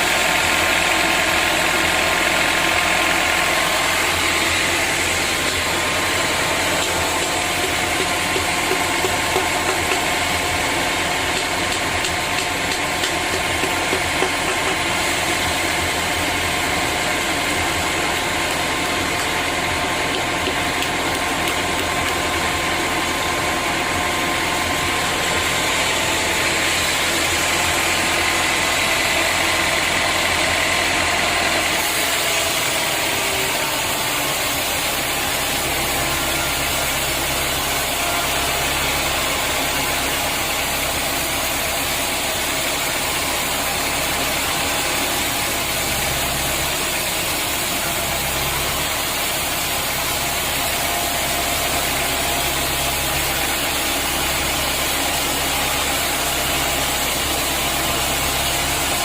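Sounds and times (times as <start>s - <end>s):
sawmill machinery hum and hiss: 0.0s - 59.0s.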